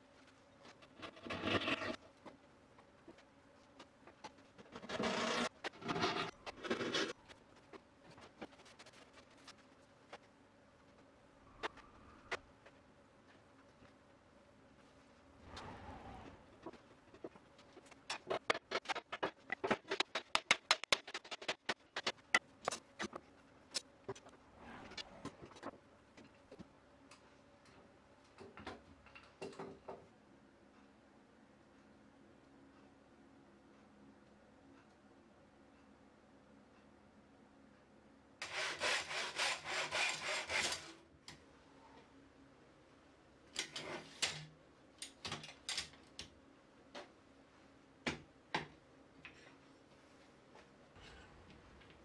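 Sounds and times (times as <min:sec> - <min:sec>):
quiet low hum: 0:00.0 - 0:20.0, 0:45.9 - 0:52.0.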